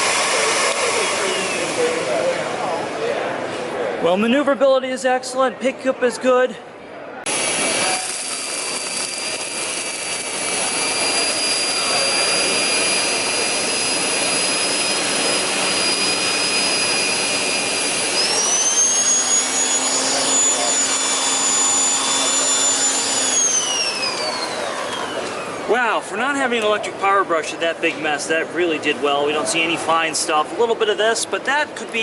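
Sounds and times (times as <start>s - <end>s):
vacuum cleaner whine: 0.0s - 2.8s, 7.3s - 25.9s.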